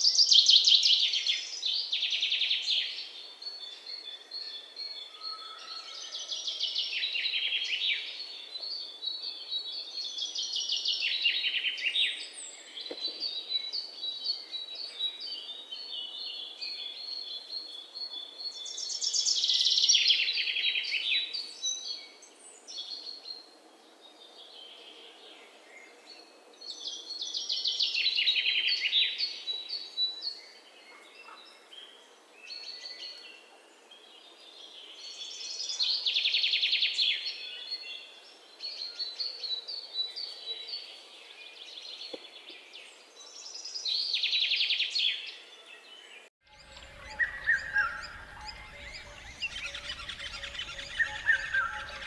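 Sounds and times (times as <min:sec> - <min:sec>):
bird chirping high: 0:46.5 - 0:52.0
bird song falling in pitch: 0:46.5 - 0:52.0.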